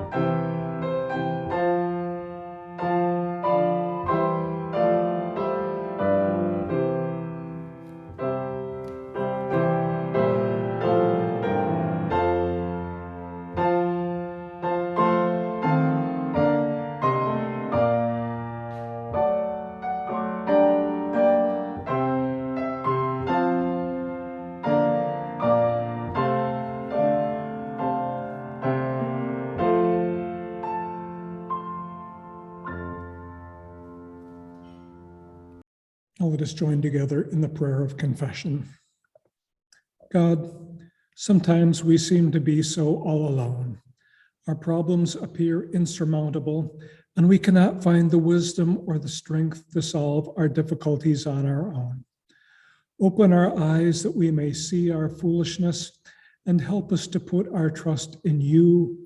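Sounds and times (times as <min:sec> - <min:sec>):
piano playing slow chords: 0:00.0 - 0:35.6.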